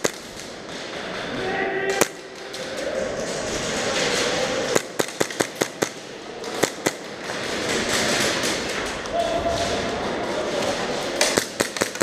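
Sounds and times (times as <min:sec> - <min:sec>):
airsoft guns firing: 0:00.0 - 0:01.2, 0:04.6 - 0:08.9, 0:11.1 - 0:12.0.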